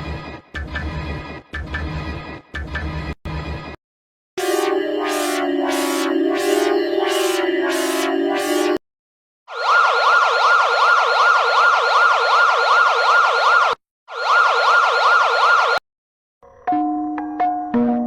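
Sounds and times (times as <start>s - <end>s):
warbling electronic siren: 4.4s - 8.8s, 9.5s - 15.8s.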